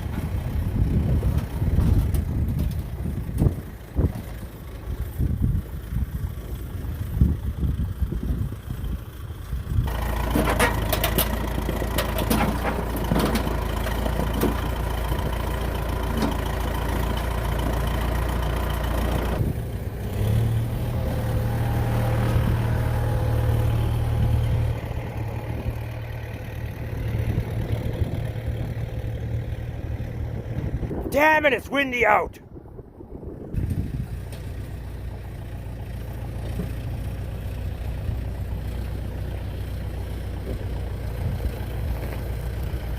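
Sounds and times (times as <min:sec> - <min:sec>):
tractor engine running: 0:00.0 - 0:42.9
metal clanks and knocks: 0:10.2 - 0:14.8.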